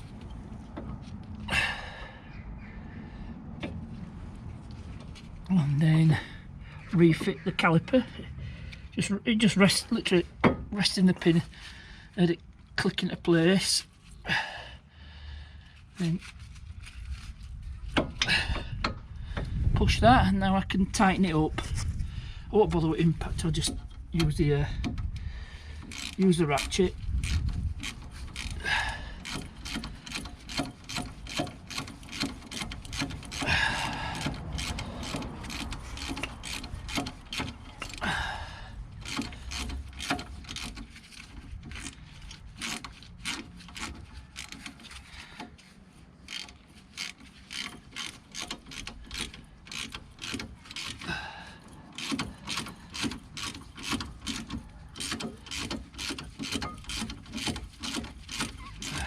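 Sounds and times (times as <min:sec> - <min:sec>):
hand ratchet clicking: 0:23.3 - 0:38.2, 0:38.9 - 0:59.0.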